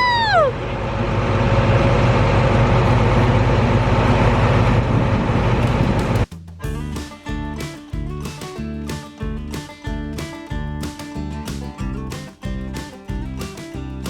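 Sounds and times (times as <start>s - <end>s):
person shouting woohoo: 0.0s - 0.6s
farm machine engine drone: 0.0s - 6.3s
music: 5.7s - 14.0s.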